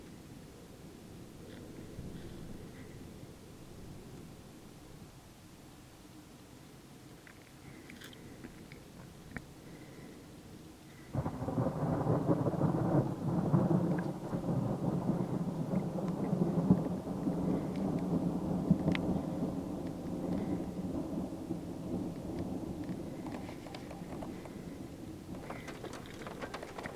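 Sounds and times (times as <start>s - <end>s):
rain falling: 11.1s - 26.9s
thunder clap and rumble: 11.1s - 26.9s.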